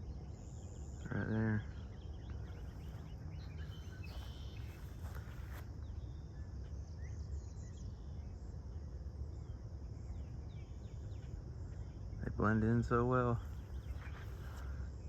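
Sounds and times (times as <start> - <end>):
high insect drone: 0.0 - 15.0
low constant rumble: 0.0 - 15.0
short bird chirps: 3.6 - 5.2.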